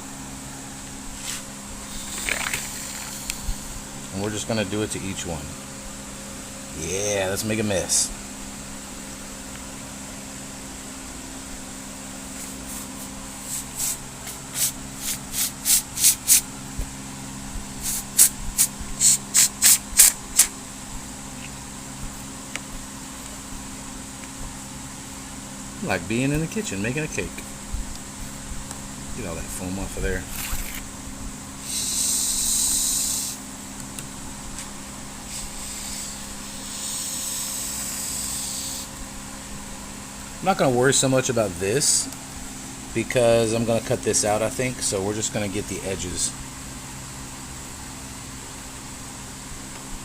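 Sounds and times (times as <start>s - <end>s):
spray foam hissing spurts: 1.9s - 3.6s, 12.4s - 16.4s, 17.8s - 20.5s, 35.3s - 38.8s.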